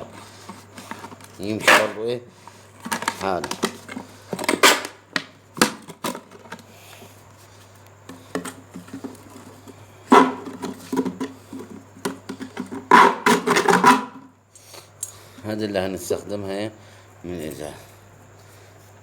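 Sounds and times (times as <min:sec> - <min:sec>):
plastic bottle crackling: 0:00.0 - 0:06.6.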